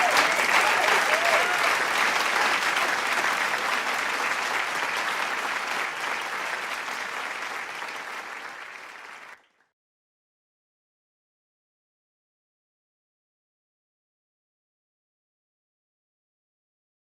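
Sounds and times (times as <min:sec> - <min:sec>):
large crowd applauding: 0:00.0 - 0:09.7.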